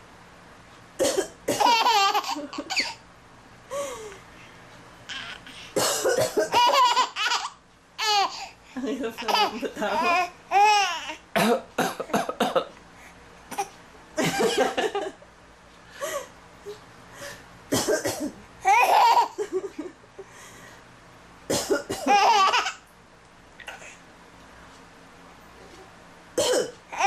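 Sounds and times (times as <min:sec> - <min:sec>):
woman coughing: 0:01.0 - 0:01.8, 0:05.8 - 0:06.8, 0:09.0 - 0:10.3, 0:11.4 - 0:12.7, 0:17.7 - 0:19.0, 0:21.5 - 0:22.2, 0:26.4 - 0:26.8
baby laughing: 0:01.6 - 0:03.0, 0:06.5 - 0:08.6, 0:09.2 - 0:11.2, 0:18.6 - 0:19.8, 0:22.1 - 0:22.8.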